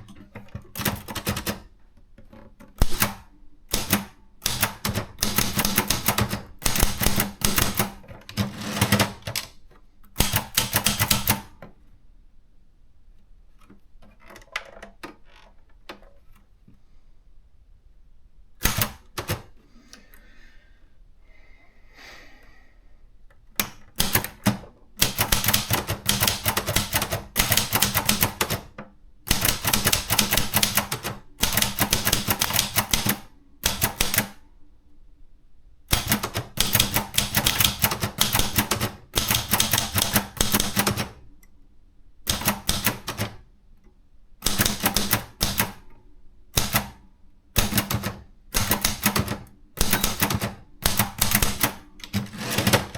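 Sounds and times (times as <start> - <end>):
typewriter keystrokes: 0.0 - 1.7, 2.8 - 11.7, 18.6 - 19.5, 23.6 - 34.4, 35.9 - 41.3, 42.3 - 43.4, 44.4 - 45.9, 46.5 - 47.0, 47.6 - 52.9.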